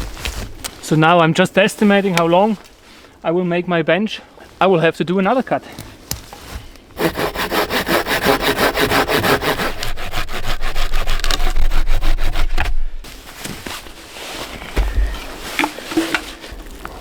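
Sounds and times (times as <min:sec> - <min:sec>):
hand saw cutting log: 0:07.0 - 0:12.8
scraping and handling sounds: 0:12.3 - 0:17.0.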